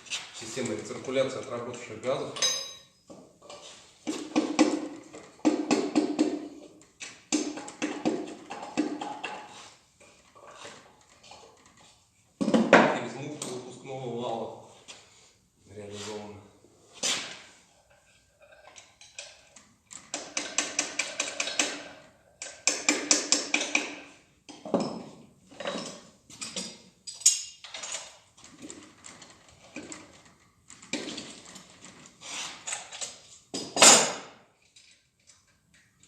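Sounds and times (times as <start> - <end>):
metal tools clinking and rattling: 2.2 - 3.7, 24.5 - 31.9.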